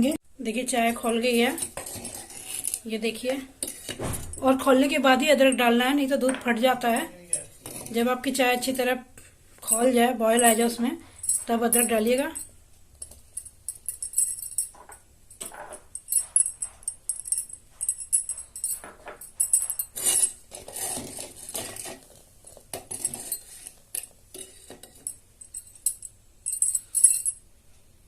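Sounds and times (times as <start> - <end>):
metal utensils clinking: 9.6 - 27.4.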